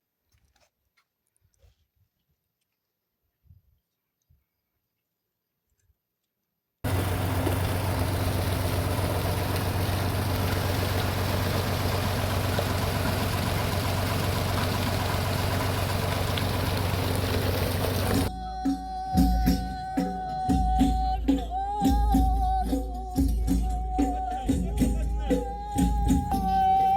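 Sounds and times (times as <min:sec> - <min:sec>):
engine humming steadily: 0:06.8 - 0:18.3, 0:21.8 - 0:26.9.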